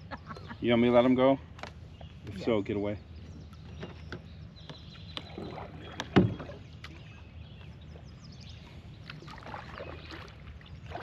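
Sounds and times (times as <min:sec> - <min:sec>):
knocks and clicks on a kayak: 0:03.6 - 0:06.5.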